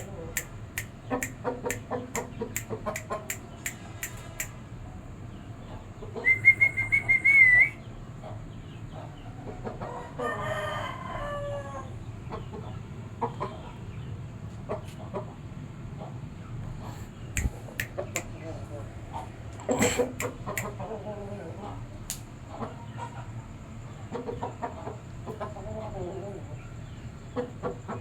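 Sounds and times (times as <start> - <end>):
sharp clicks: 0.0 - 4.5, 17.4 - 18.3
high warbling whistle: 6.3 - 7.8
rooster crowing: 10.0 - 12.0.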